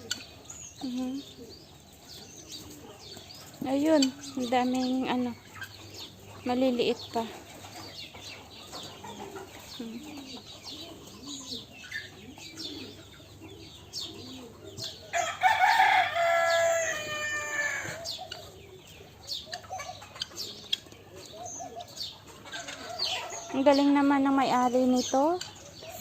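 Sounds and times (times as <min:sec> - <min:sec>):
chickens clucking: 0:00.0 - 0:26.0
rooster crowing: 0:15.1 - 0:18.1.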